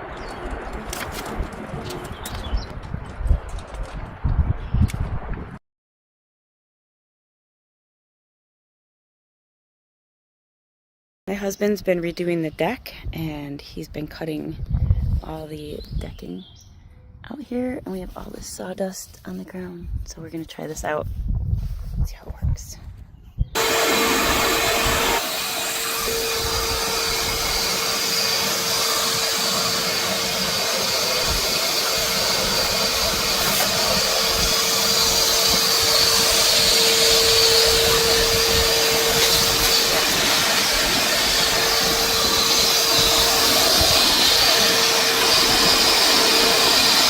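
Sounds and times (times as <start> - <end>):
rush of air: 23.6 - 47.0
vacuum motor whine: 23.6 - 47.0.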